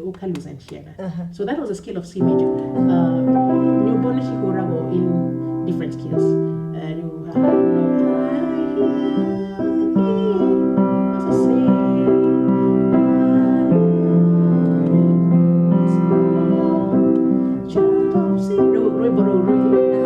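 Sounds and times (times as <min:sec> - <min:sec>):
piano playing slow held chords: 0:02.2 - 0:20.0.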